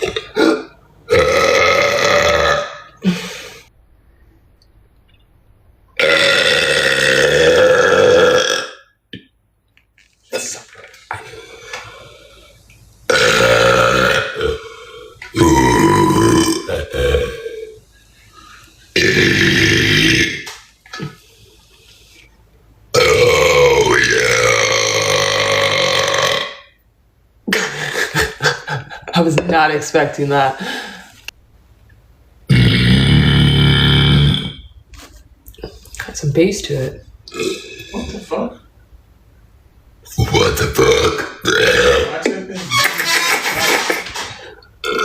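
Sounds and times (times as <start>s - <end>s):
woman belching loudly: 0.0s - 2.9s, 6.0s - 8.9s, 13.1s - 14.7s, 15.3s - 17.6s, 19.0s - 21.1s, 23.0s - 26.7s, 32.5s - 34.6s, 40.7s - 42.3s.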